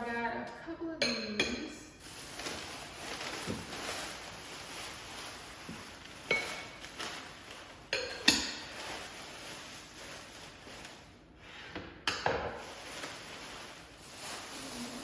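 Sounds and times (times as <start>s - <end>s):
ceramic dishes clinking: 7.9s - 8.7s.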